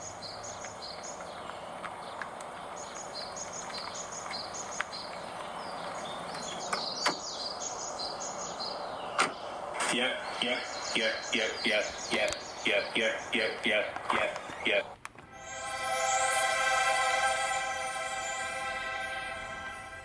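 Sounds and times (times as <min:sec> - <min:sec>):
birds chirping: 0:00.0 - 0:15.0
steady background noise: 0:00.0 - 0:20.0.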